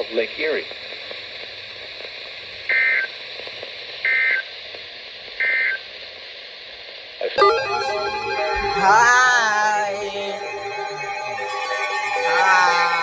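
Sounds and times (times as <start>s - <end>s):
radio hiss: 0.0s - 13.0s
digital data tone bursts: 7.4s - 13.0s.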